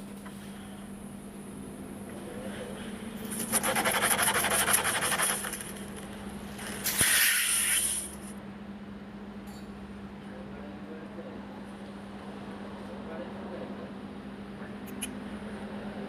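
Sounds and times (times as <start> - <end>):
steady low hum: 0.0 - 16.0
air hiss: 6.6 - 8.3
compressed air blast: 6.6 - 8.3.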